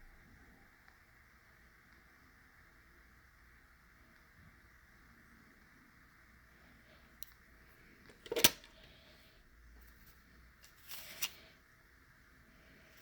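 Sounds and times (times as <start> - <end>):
toy car handling clicks: 8.1 - 8.7.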